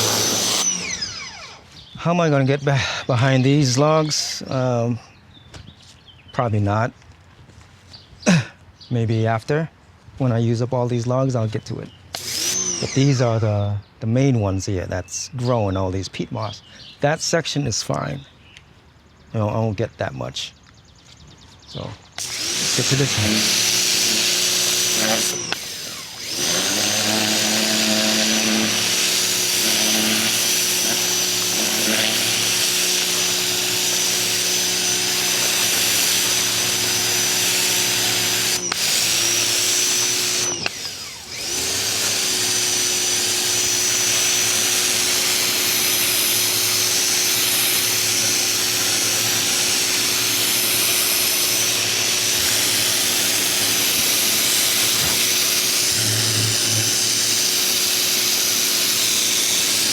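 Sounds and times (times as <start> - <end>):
pressure washer motor humming: 0.0 - 2.2, 12.1 - 13.2, 22.2 - 59.9.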